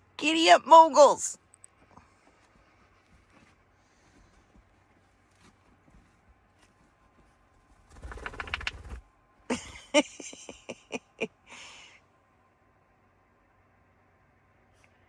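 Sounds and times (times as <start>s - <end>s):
bird wings fluttering: 7.7s - 9.1s.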